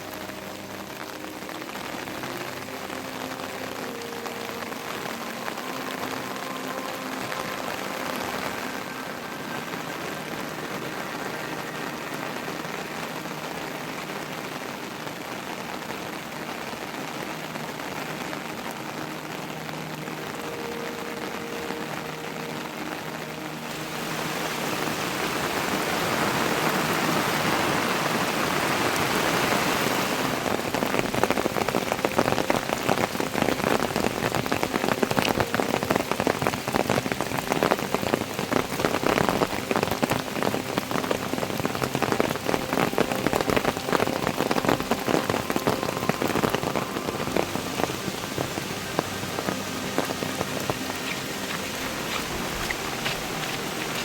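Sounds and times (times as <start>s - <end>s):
heavy rain falling: 0.0s - 54.0s.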